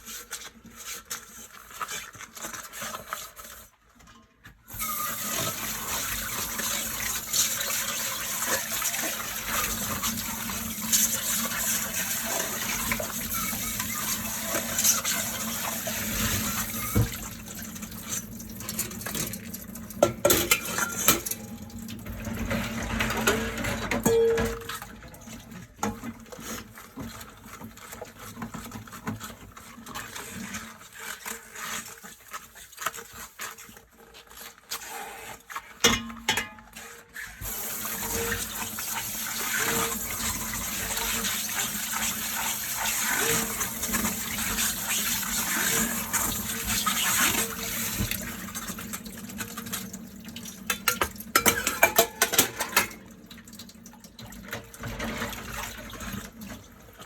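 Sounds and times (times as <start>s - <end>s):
tap water running: 4.7s - 33.7s, 35.9s - 57.0s
dish clatter: 20.0s - 21.5s, 22.3s - 24.9s, 35.8s - 36.8s, 50.7s - 53.0s
dishes clinking: 20.0s - 21.5s, 23.1s - 24.9s, 35.8s - 36.8s, 50.7s - 53.0s.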